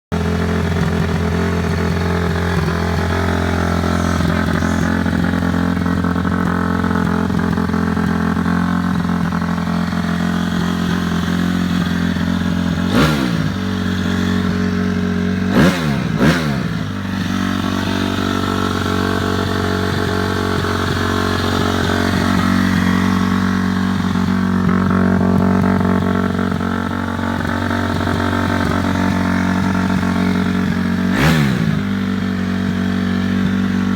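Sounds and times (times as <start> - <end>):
dirt bike engine idling: 0.1 - 33.9
engine revving: 0.1 - 33.9.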